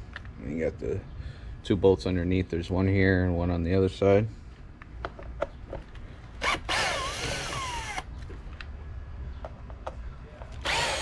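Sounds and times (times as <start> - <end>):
cordless drill whining: 6.4 - 8.1, 10.6 - 11.0.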